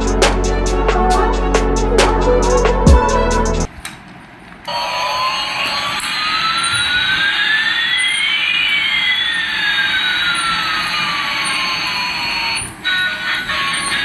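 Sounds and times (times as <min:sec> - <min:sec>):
thin whistling tones: 0:06.2 - 0:14.0.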